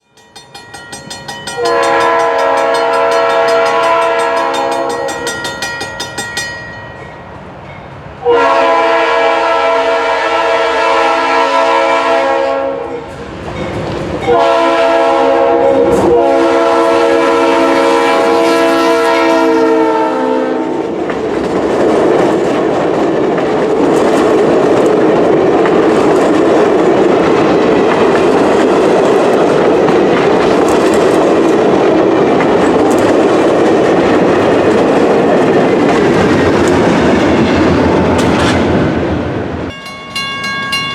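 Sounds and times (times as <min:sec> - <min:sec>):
train wheels rushing on rail: 0:00.0 - 0:40.9
locomotive air horn blasts: 0:01.6 - 0:05.0, 0:08.2 - 0:13.0, 0:14.3 - 0:20.8.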